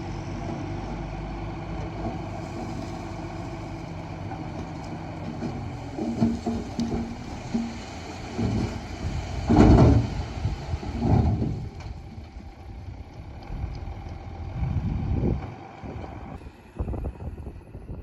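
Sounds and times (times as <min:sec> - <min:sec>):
diesel engine rumbling under load: 0:00.0 - 0:18.0.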